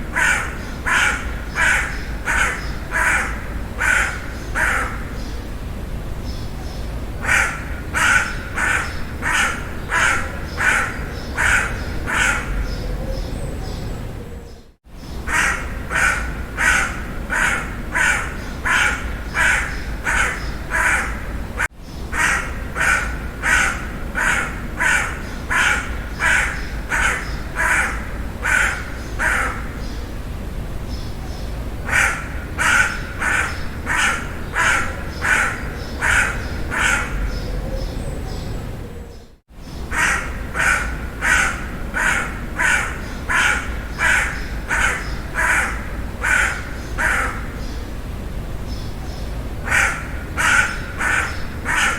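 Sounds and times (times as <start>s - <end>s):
crow cawing: 0.0s - 5.2s, 7.2s - 12.8s, 15.2s - 29.9s, 31.8s - 37.4s, 39.9s - 47.7s, 49.6s - 51.9s
low background hum: 0.0s - 51.9s.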